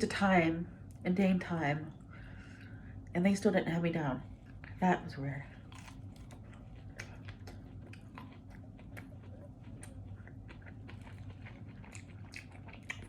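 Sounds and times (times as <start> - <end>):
chewing mouth clicks and smacks: 5.6 - 13.0.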